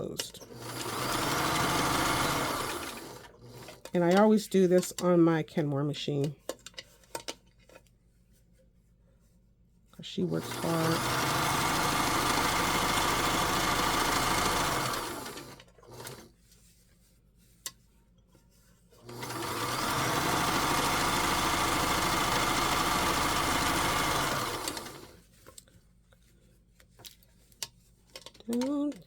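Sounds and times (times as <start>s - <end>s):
sewing machine running: 0.2s - 3.9s, 10.3s - 16.3s, 19.0s - 25.2s.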